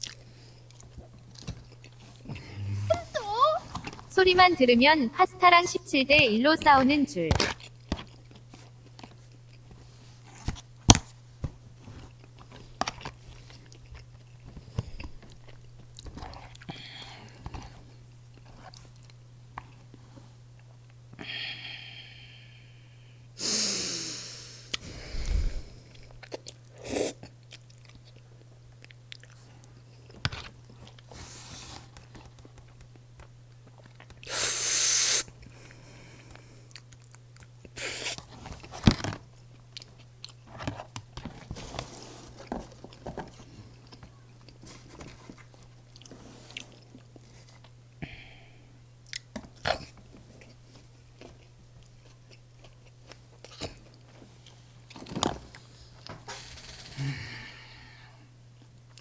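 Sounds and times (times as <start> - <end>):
wet chewing: 7.4 - 9.7, 25.9 - 31.1, 35.4 - 37.8.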